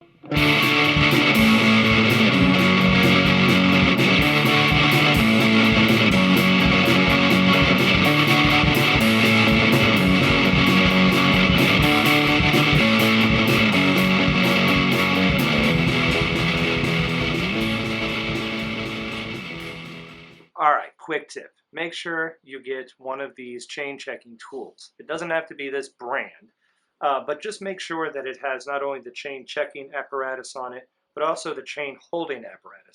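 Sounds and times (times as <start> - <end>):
rock music with electric guitar: 0.0 - 20.5.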